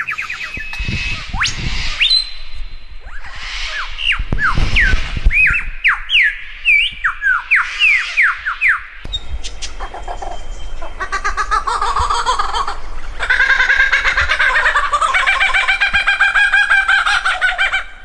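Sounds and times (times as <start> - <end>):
lyrebird slurred whistles: 0.0 - 10.4
lyrebird harsh chattering: 7.4 - 18.0.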